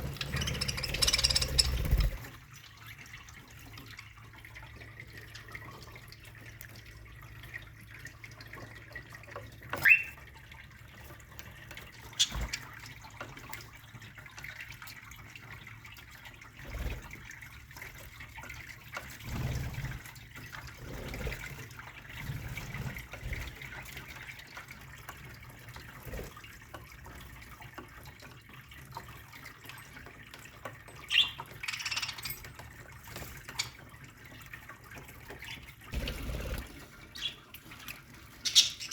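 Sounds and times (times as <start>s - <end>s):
budgerigars chattering: 0.2s - 1.8s, 38.5s - 38.9s.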